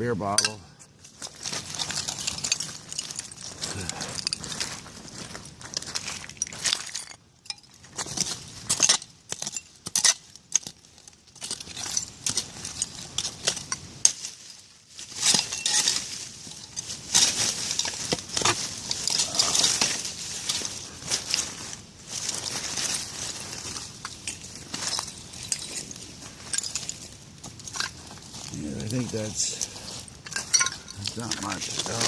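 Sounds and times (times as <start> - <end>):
scraping through soil and glass: 0.2 - 32.0
glass clinking: 30.3 - 31.0.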